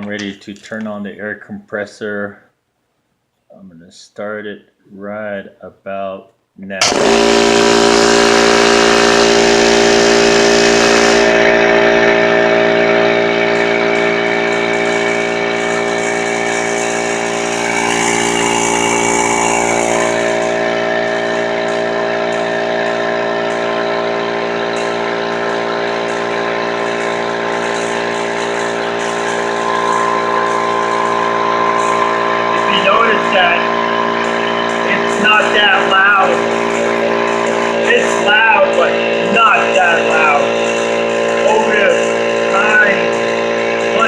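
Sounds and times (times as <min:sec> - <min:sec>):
air compressor drone: 0:06.8 - 0:44.0.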